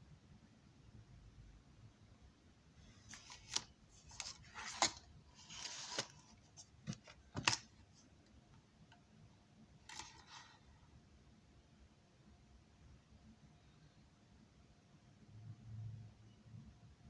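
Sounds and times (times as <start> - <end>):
handling rustles: 3.0 - 7.7.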